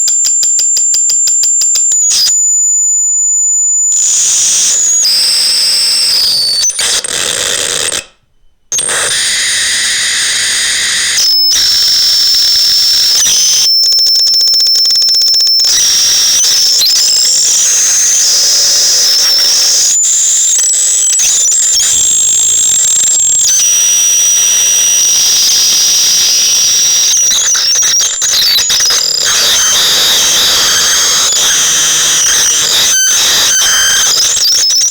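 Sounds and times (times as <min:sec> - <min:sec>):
rapid electronic clicking: 0:00.0 - 0:02.4, 0:11.2 - 0:34.9
high-pitched electronic tones: 0:08.8 - 0:34.9.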